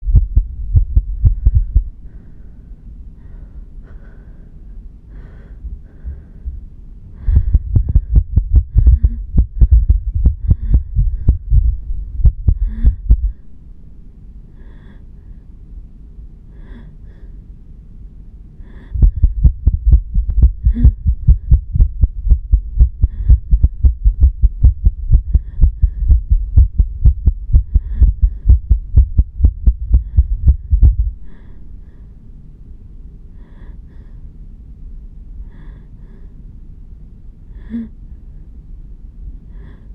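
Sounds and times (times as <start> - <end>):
fast irregular heartbeat: 0.0 - 2.0, 5.7 - 13.4, 18.9 - 31.7
faint breathing: 0.4 - 17.8, 18.4 - 39.9.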